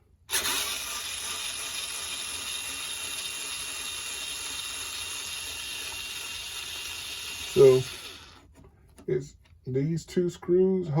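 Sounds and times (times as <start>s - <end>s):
power driver whirring: 0.3s - 8.6s.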